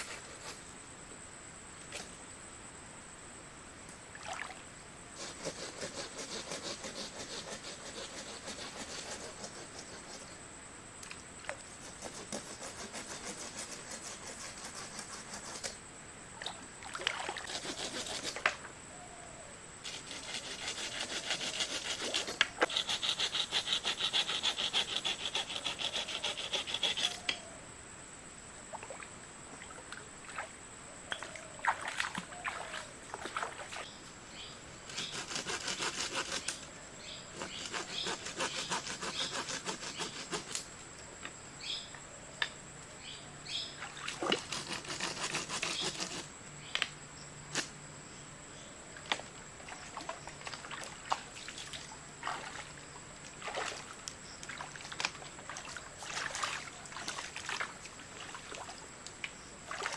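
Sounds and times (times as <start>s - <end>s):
hand saw cutting wood: 5.2s - 10.3s, 11.8s - 15.8s, 17.5s - 18.5s, 19.9s - 27.3s, 34.9s - 36.6s, 37.3s - 40.6s, 44.3s - 46.3s.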